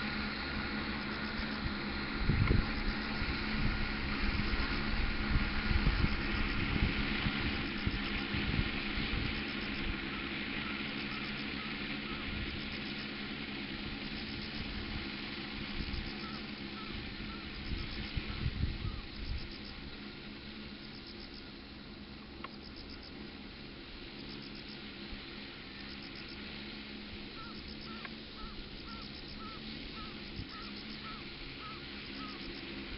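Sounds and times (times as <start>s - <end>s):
drone rotors humming: 0.0s - 32.9s
wind buffeting microphone: 1.5s - 10.7s, 13.8s - 19.9s.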